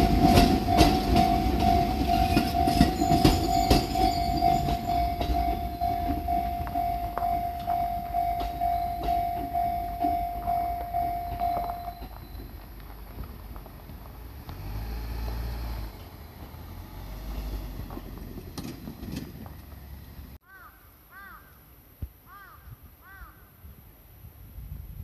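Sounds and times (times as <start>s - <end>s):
low vehicle rumble: 0.0s - 20.4s
crow cawing: 20.4s - 21.6s, 22.3s - 23.5s.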